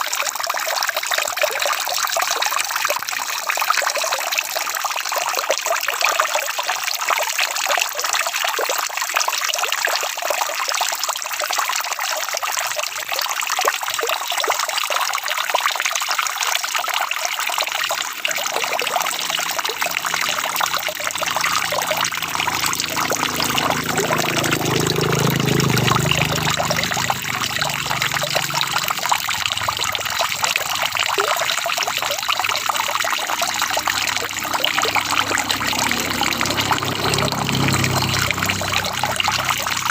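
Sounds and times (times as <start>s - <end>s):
water trickling: 0.0s - 39.9s
low rumble: 25.8s - 39.9s.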